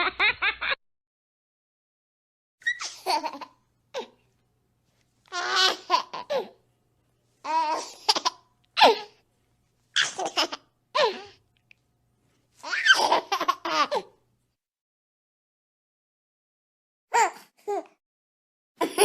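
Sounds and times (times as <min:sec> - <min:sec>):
baby giggling and laughing: 0:02.6 - 0:04.2, 0:05.3 - 0:06.6, 0:07.5 - 0:09.2, 0:10.0 - 0:11.4, 0:12.6 - 0:14.2, 0:18.8 - 0:19.0.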